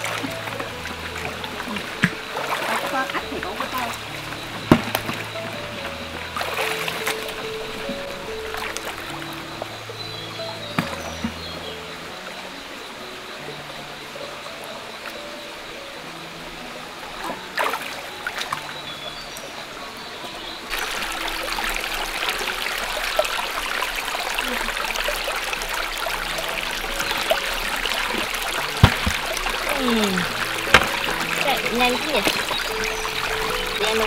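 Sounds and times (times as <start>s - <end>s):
stream flowing over rocks: 0.0s - 34.0s
light knocks: 28.8s - 29.3s, 30.7s - 31.2s.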